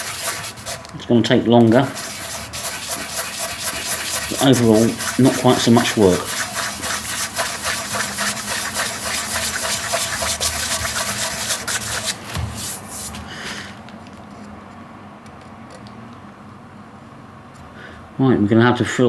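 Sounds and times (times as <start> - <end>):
sandpaper rubbing on wood: 0.0 - 0.9, 1.7 - 13.2.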